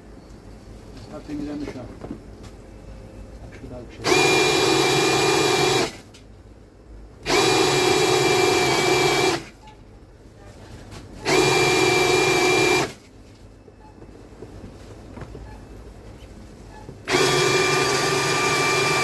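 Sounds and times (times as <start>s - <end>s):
electric power tool running: 4.0s - 6.0s, 7.2s - 9.5s, 11.2s - 13.0s, 17.1s - 19.0s.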